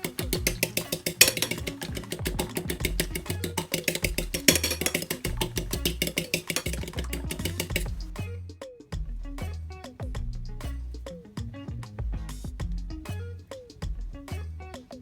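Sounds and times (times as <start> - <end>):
upbeat music with percussive beat: 0.0 - 15.0
bass line: 6.8 - 14.7.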